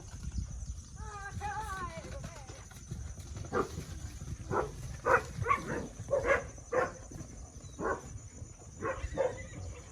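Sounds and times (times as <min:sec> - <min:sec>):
dog barking: 0:04.5 - 0:07.0, 0:07.8 - 0:08.0, 0:08.8 - 0:09.4.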